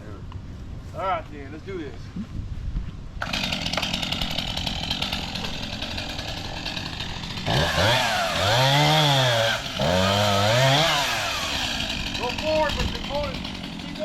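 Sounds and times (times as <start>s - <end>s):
chainsaw revving and cutting wood: 3.2s - 14.0s.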